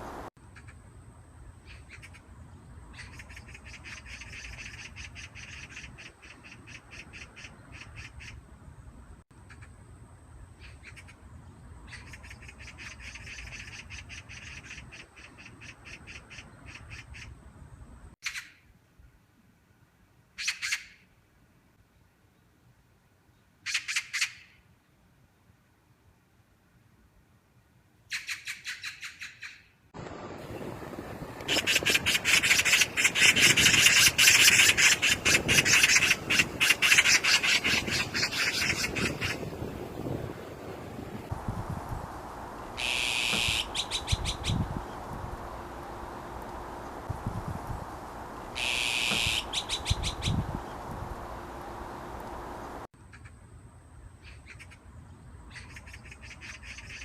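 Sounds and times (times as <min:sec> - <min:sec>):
magpie harsh calls: 0:31.5 - 0:39.4, 0:42.8 - 0:44.7, 0:48.6 - 0:50.4
magpie chattering: 0:31.5 - 0:39.5, 0:42.8 - 0:44.7, 0:48.6 - 0:50.4.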